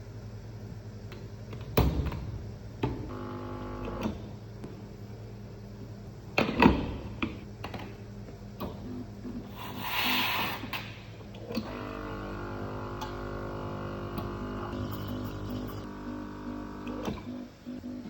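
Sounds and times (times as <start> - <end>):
steady low hum: 10.9 - 18.0.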